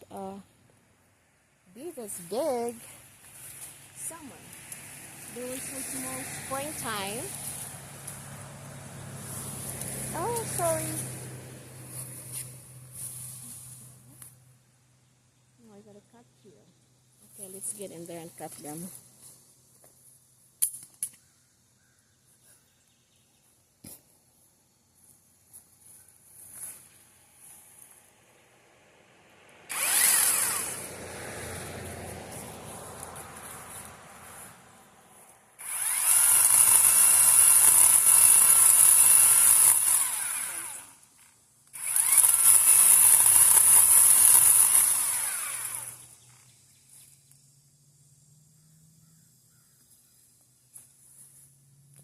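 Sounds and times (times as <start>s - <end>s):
chainsaw cutting tree: 4.6s - 12.5s, 29.6s - 34.5s, 35.6s - 46.5s.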